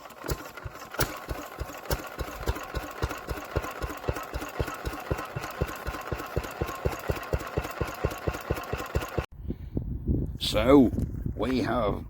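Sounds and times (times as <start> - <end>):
engine idling: 0.0 - 9.3.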